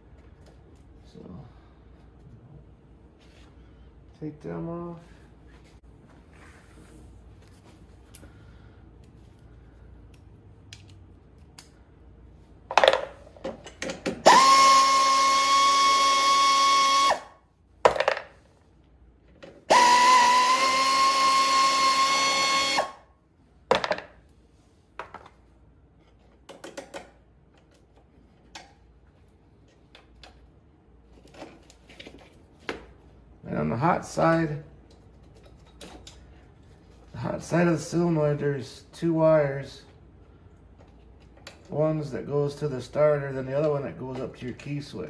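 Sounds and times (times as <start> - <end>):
cordless drill whining: 14.2 - 17.3, 19.7 - 23.0.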